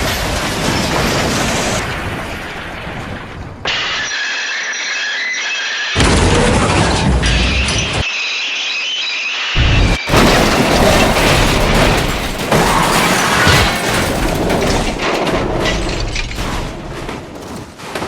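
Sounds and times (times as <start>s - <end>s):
cartoon crash: 6.0s - 8.0s, 9.6s - 16.6s
booming clattering crash: 9.8s - 17.8s.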